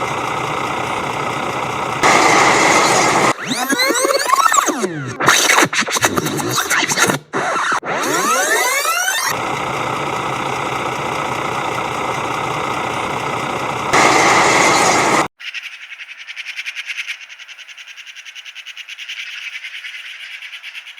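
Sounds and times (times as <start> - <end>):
steady mechanical running noise: 0.0 - 3.6, 8.0 - 15.3.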